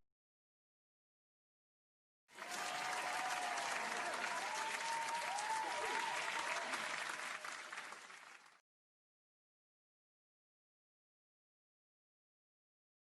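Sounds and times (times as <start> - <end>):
crowd applauding: 2.3 - 8.6.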